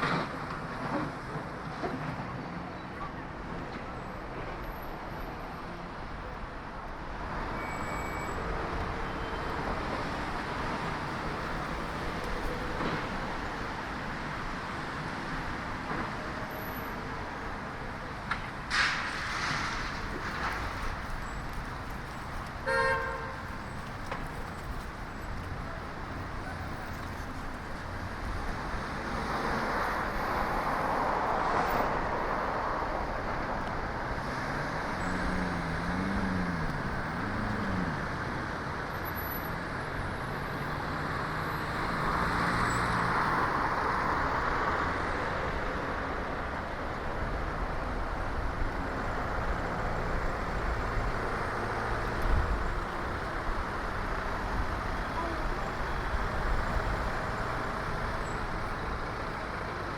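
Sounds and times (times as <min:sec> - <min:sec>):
cars passing: 0:00.0 - 0:59.9
short horn toot: 0:22.6 - 0:23.4.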